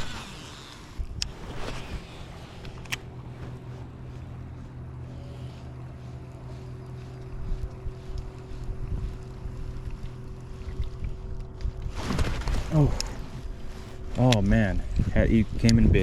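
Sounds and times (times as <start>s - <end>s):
steady low hum: 0.0s - 16.0s
wind buffeting microphone: 7.2s - 16.0s.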